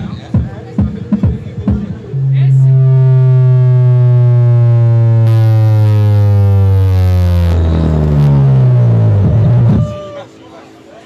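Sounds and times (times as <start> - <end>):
loud falling tone through speakers: 2.1 - 10.5.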